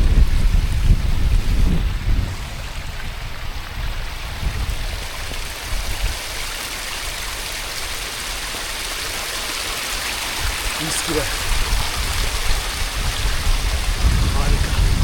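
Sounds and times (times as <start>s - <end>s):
wind buffeting microphone: 0.0s - 6.6s, 10.2s - 15.0s
stream water running: 0.0s - 15.0s.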